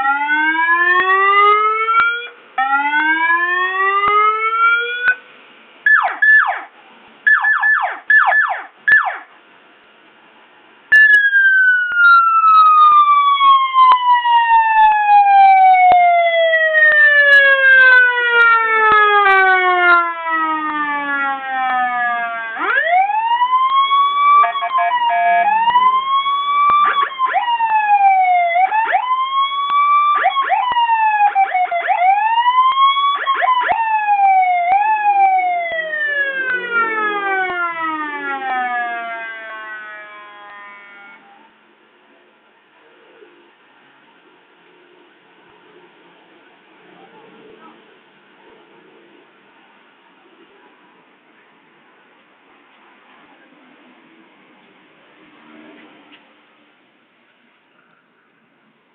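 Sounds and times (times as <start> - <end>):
electronic vehicle siren: 0.0 - 5.2, 5.9 - 6.7, 7.3 - 9.3, 10.9 - 41.6.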